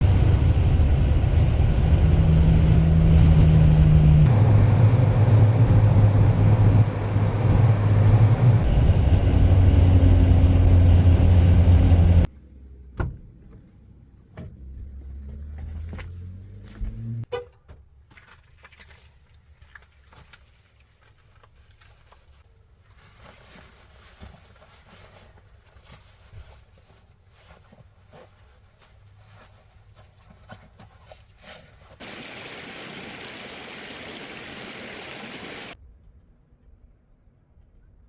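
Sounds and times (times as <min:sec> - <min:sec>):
vehicle running hum: 0:00.0 - 0:12.8, 0:14.5 - 0:17.3, 0:32.0 - 0:35.8.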